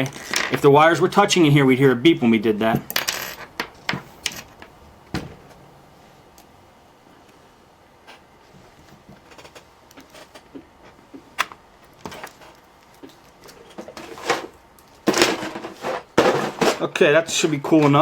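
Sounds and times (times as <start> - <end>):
tools handled on a workbench: 2.6 - 5.6.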